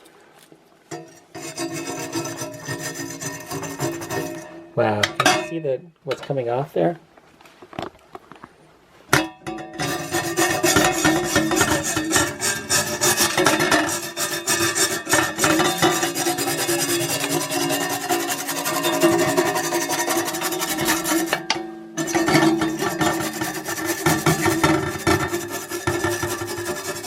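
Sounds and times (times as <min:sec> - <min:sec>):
brush scrubbing saw blade: 0:01.3 - 0:04.6, 0:09.8 - 0:27.0.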